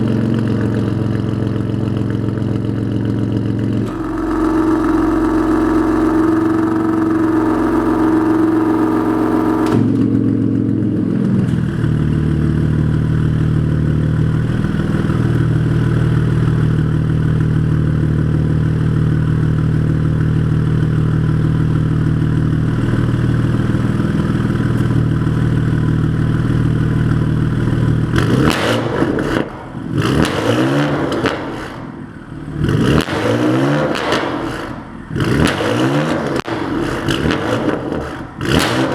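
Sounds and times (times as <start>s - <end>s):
car engine revving and idling: 3.7s - 9.9s.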